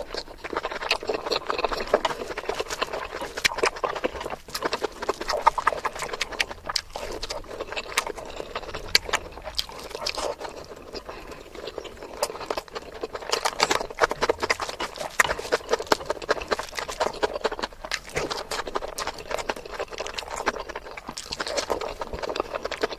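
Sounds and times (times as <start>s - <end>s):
chewing and lip smacking: 0.0s - 22.9s.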